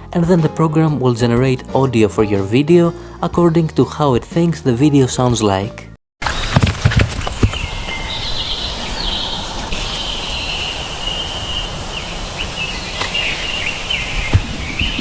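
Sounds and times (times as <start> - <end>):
high birdsong chirping: 7.2 - 15.0.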